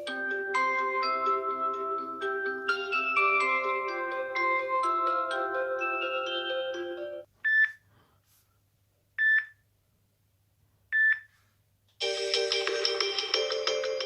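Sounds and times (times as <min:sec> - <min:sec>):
dense melodic ringtone: 0:00.0 - 0:07.3, 0:12.0 - 0:14.0
marimba-like ringtone: 0:00.0 - 0:07.3, 0:12.0 - 0:14.0.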